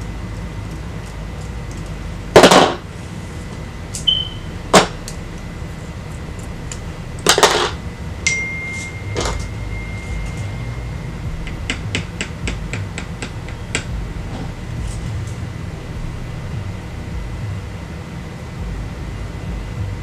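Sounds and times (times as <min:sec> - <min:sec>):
low steady hum: 0:00.0 - 0:20.0
faint high tone: 0:08.3 - 0:11.3.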